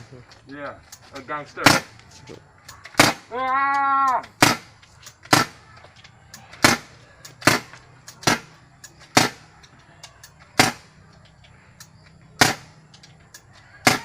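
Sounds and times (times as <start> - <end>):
gunshots: 1.6 - 2.0, 2.9 - 3.3, 4.4 - 5.6, 6.6 - 9.5, 10.6 - 11.0, 12.4 - 12.8.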